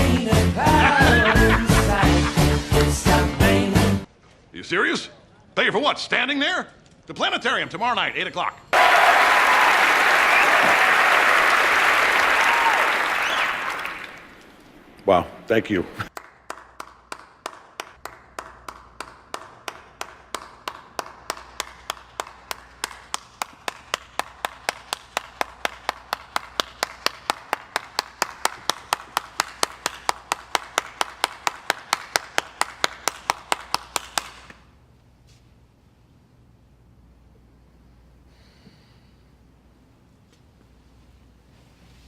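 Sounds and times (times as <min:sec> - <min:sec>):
rhythmic handclapping: 0:00.0 - 0:03.4, 0:08.8 - 0:14.4, 0:16.1 - 0:34.7.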